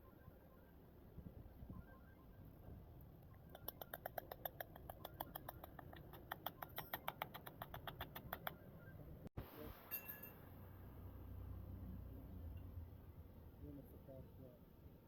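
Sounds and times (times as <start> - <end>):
quick run of faint clicks: 3.5 - 8.6.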